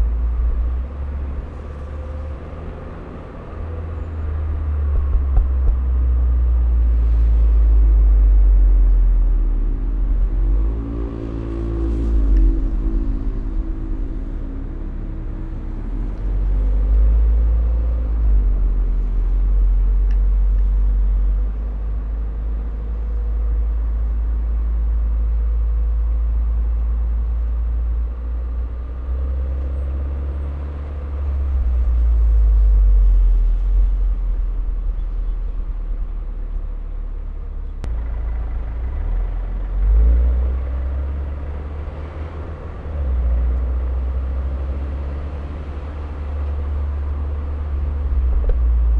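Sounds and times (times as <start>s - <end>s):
car engine accelerating: 0.0s - 25.8s.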